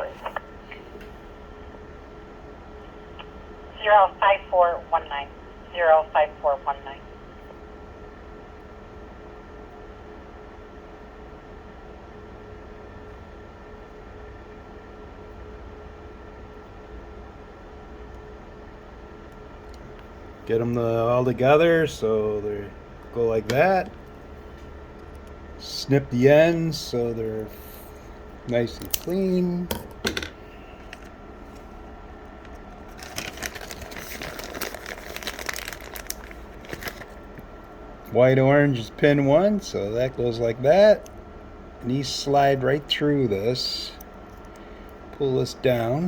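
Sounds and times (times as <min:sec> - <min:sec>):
steady low hum: 0:00.0 - 0:46.0
wires clicking and rustling: 0:27.8 - 0:31.7, 0:32.4 - 0:37.5.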